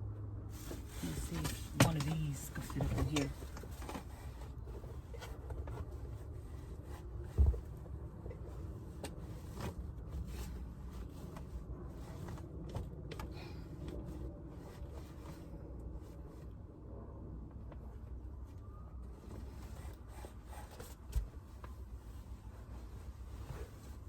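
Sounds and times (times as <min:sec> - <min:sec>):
soft rustling: 0:00.5 - 0:13.2, 0:17.7 - 0:24.0.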